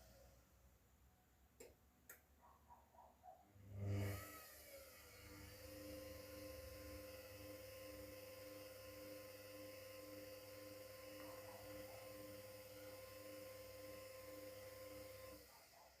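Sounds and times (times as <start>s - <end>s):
washing machine electrical hum: 3.7s - 15.9s.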